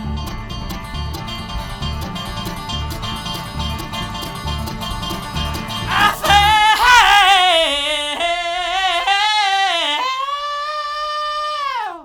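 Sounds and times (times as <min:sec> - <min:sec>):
bluegrass band playing: 0:00.0 - 0:08.9
singer holding a wavering note: 0:05.8 - 0:12.0.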